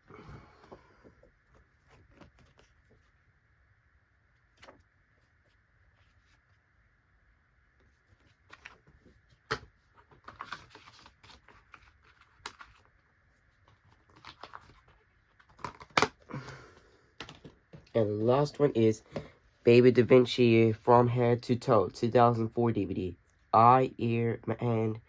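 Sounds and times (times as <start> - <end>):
paper rustling: 1.5 - 3.1, 7.8 - 16.0.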